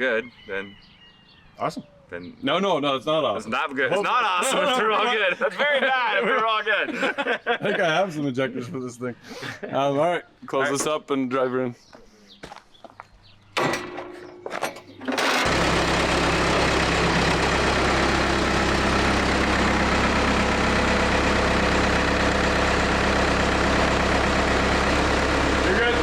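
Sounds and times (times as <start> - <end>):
short clunks: 13.5 - 17.5
diesel engine starting and running: 13.5 - 26.0.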